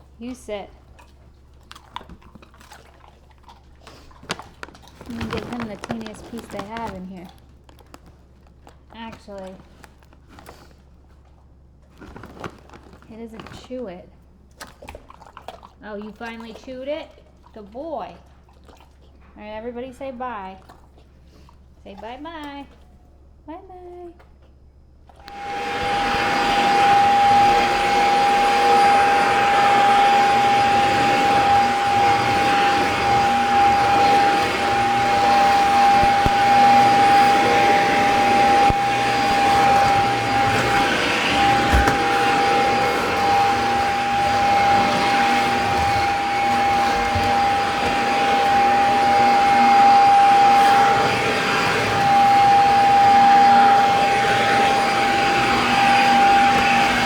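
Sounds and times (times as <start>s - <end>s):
vacuum cleaner running: 4.2s - 7.9s, 9.0s - 9.8s, 25.2s - 57.0s.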